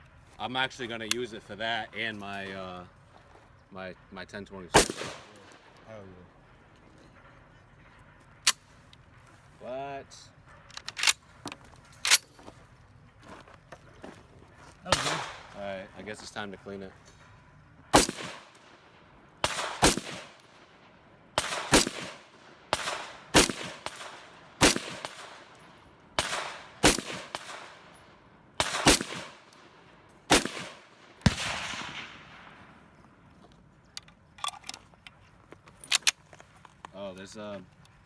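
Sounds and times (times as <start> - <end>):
gunshots with echo: 4.7 - 5.7, 14.9 - 15.7, 17.9 - 18.7, 19.4 - 20.6, 21.4 - 25.6, 26.2 - 27.9, 28.6 - 29.5, 30.3 - 32.9.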